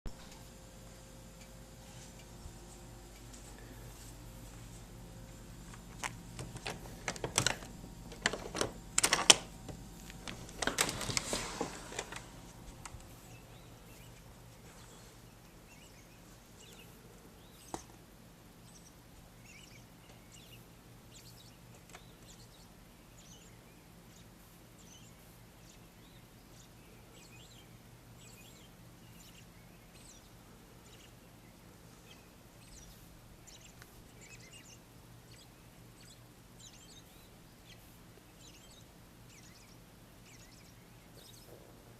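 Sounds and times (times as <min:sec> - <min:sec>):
songbirds chirping: 0:00.1 - 0:41.9
steady low hum: 0:00.1 - 0:41.9
handling noise clicks and rustling: 0:05.7 - 0:13.2.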